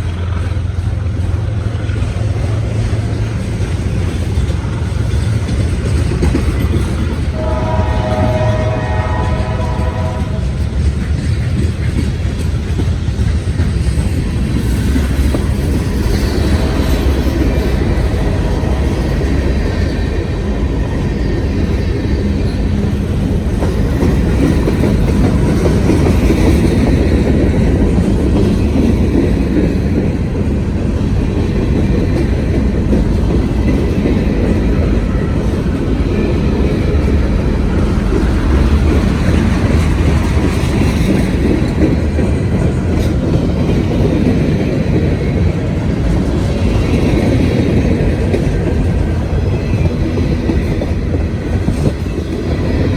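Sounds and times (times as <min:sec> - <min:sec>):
freight train wheels rumbling: 0:00.0 - 0:52.9
rail joints clickety-clack: 0:00.0 - 0:52.9.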